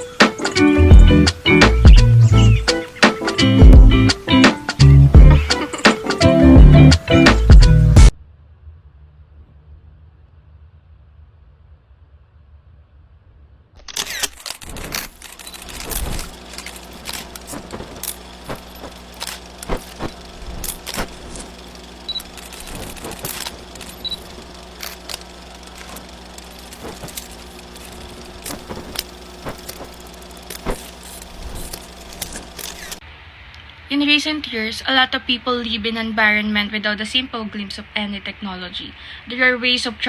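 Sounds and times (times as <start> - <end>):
mechanical hum: 0.0 - 40.0.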